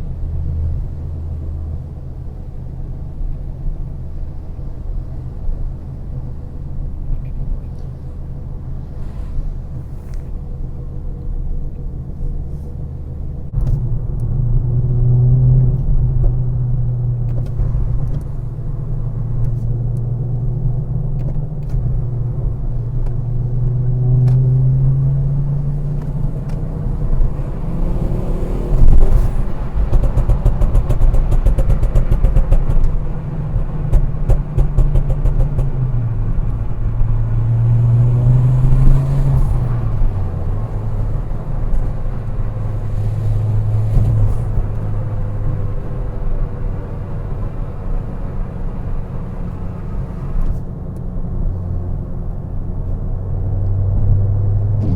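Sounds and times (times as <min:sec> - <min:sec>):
turbocharged car engine revving: 0:21.6 - 0:50.4, 0:53.5 - 0:54.9.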